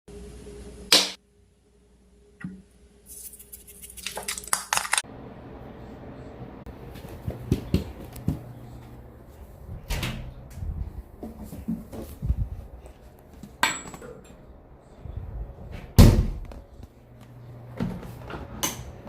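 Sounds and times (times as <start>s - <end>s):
utensils and containers clinking: 3.1s - 5.0s.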